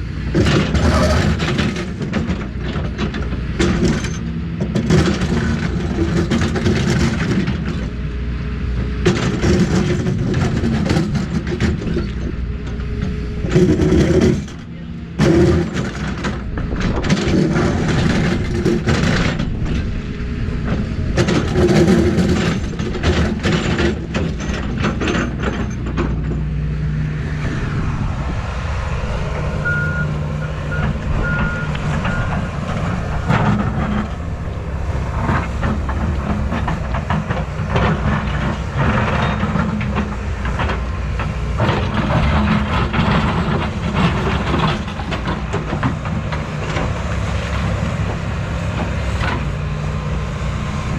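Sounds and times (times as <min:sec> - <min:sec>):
excavator diesel engine under load: 0:00.0 - 0:50.9
excavator bucket clanking: 0:00.3 - 0:08.0, 0:08.8 - 0:26.8, 0:29.4 - 0:49.6
backup alarm beeping: 0:29.6 - 0:32.4.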